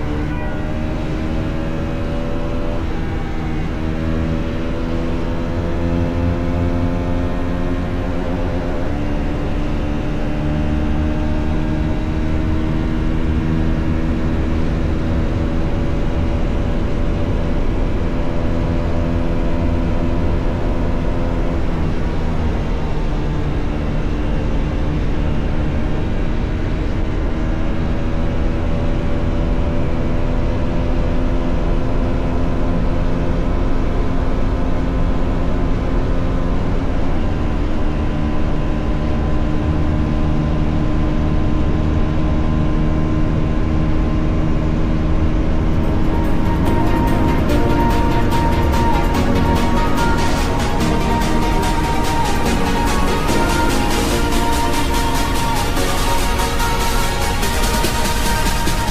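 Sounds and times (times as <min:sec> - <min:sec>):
motorcycle engine revving: 0:00.0 - 0:26.8.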